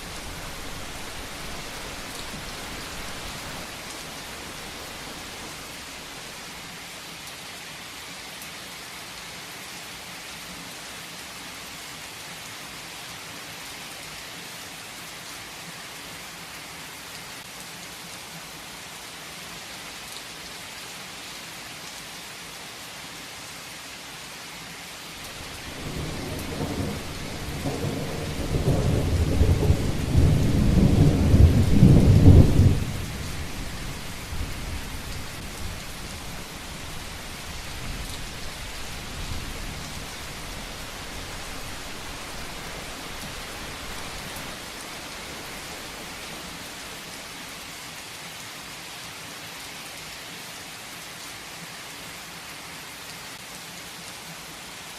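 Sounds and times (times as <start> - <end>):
thunder rumbling: 0.0 - 6.3, 25.3 - 46.5
heavy rain hissing: 0.0 - 6.9, 25.2 - 47.7.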